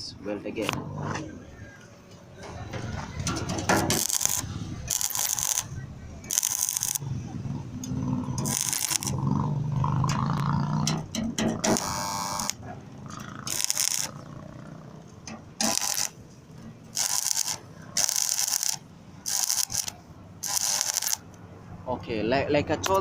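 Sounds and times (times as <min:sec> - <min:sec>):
welding arc crackling and hissing: 0:03.8 - 0:05.7, 0:06.3 - 0:07.0, 0:08.4 - 0:09.2, 0:13.4 - 0:14.2, 0:15.6 - 0:16.2, 0:16.9 - 0:21.2.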